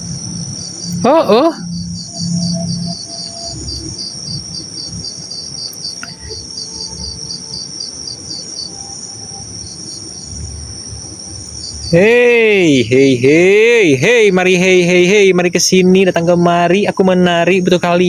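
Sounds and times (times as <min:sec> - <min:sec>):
crickets trilling: 0:00.0 - 0:18.0
insect pulsed chirps: 0:00.0 - 0:18.0.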